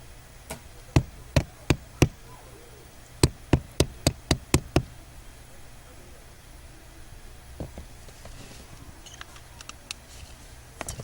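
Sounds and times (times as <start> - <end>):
hard object tapping: 0.9 - 2.2, 3.2 - 5.0.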